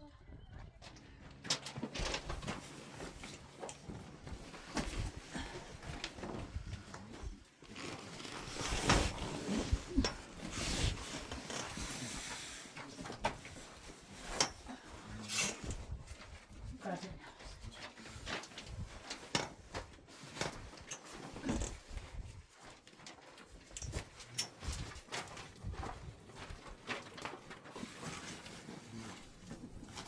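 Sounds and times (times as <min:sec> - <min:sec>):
knocks and scrapes of handling: 0:01.3 - 0:16.3.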